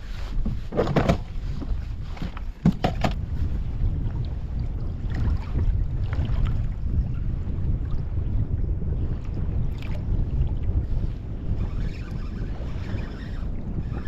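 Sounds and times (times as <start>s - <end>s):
wind buffeting microphone: 0.0s - 14.0s
knocks and rattles: 2.6s - 3.2s.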